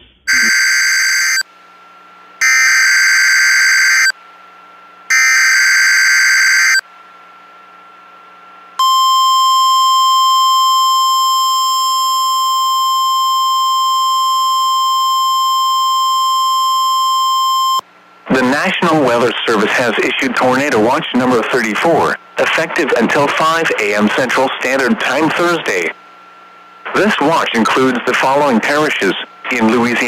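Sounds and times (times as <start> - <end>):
screechy digital data tones: 0.3 - 1.4, 2.4 - 4.2, 5.1 - 6.8.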